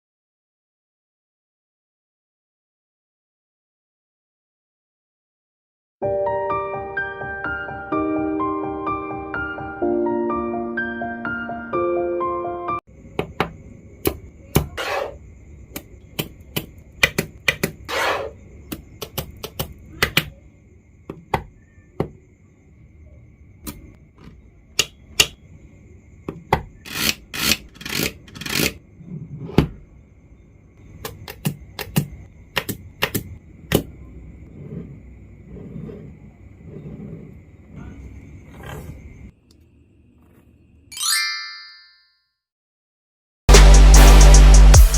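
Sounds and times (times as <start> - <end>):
pieces rubbing and sliding: 14.8 - 15.2, 17.1 - 18.4, 26.9 - 29.7, 34.5 - 37.4.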